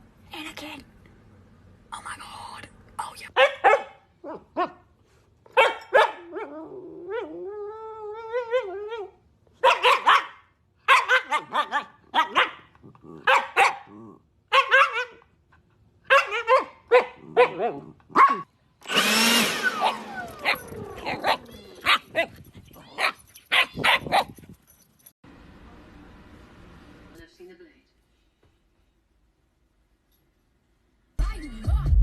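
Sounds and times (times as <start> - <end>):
dog barking: 3.3 - 4.9, 5.5 - 6.5, 9.6 - 15.2, 16.1 - 18.5, 19.8 - 22.3, 23.0 - 24.3.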